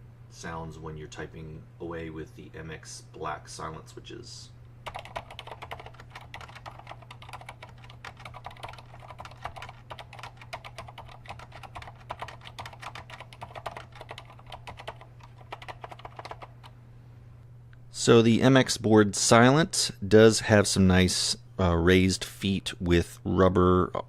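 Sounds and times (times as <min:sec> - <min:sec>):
steady low hum: 0:00.0 - 0:24.0
fast typing on mechanical keyboard: 0:04.8 - 0:16.7.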